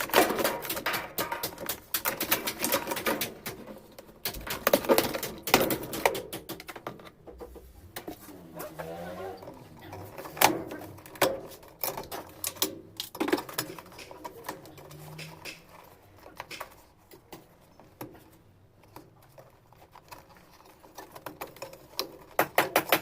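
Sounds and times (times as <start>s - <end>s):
clicks and knocks of tools: 10.0s - 23.0s.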